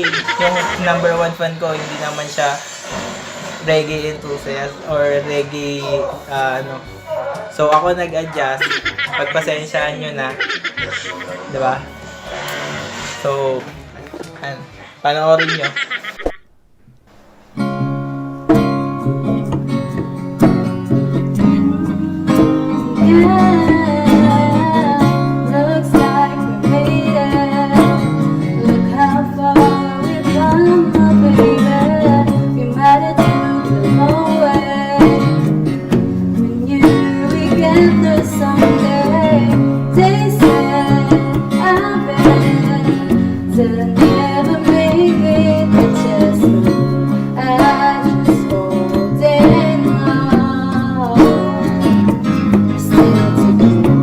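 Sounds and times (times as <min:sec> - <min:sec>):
acoustic guitar strumming: 0:04.2 - 0:14.8, 0:16.5 - 0:54.0
person singing: 0:20.4 - 0:35.7, 0:36.3 - 0:54.0.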